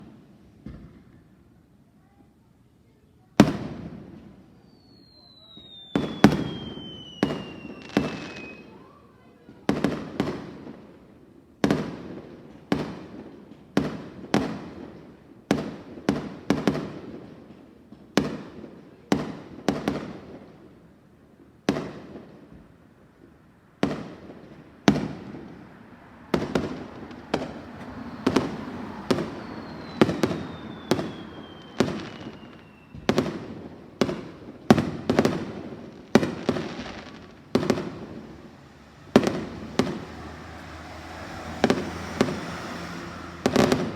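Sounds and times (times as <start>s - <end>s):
falling firework whistle: 4.5s - 9.0s, 26.3s - 33.3s
firework shells bursting: 26.4s - 35.4s.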